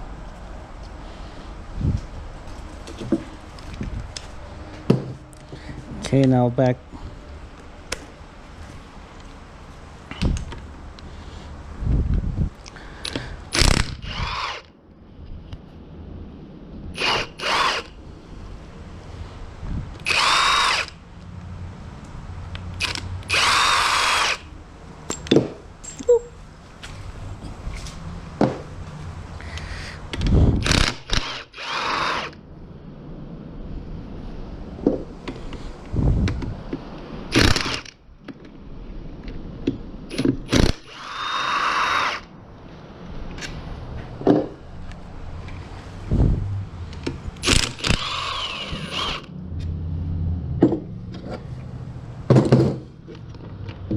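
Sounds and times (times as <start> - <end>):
power tool spinning bolts: 13.0 - 14.7, 17.0 - 17.9, 20.0 - 21.0, 22.8 - 24.5, 30.6 - 32.4, 37.3 - 38.0, 40.1 - 42.3, 47.4 - 49.3
ratchet wrench clicking: 47.4 - 49.3.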